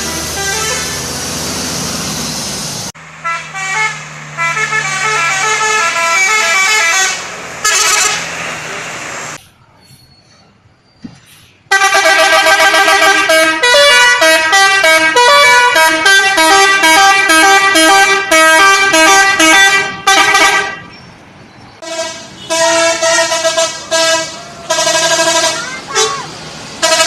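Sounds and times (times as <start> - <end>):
multi-tone bus horn tune: 0.0 - 1.4, 3.2 - 8.9, 11.7 - 20.9, 21.8 - 27.0.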